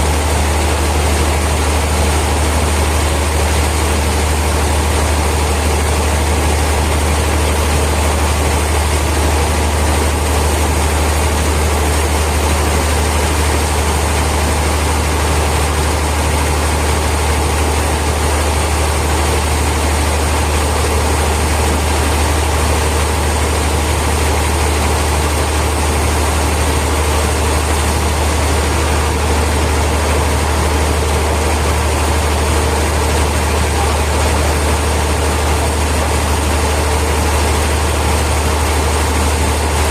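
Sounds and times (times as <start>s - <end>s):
sawmill machinery humming: 0.0s - 39.9s.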